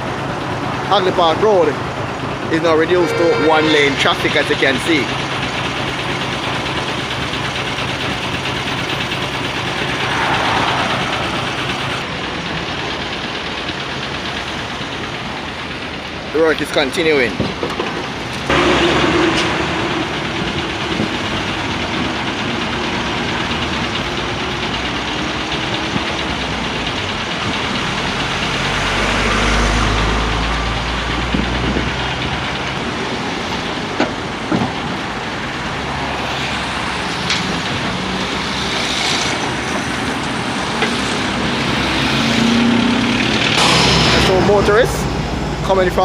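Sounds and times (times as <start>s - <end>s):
road traffic and engine noise: 0.0s - 46.0s
large vehicle passing: 6.2s - 13.5s, 18.4s - 26.4s.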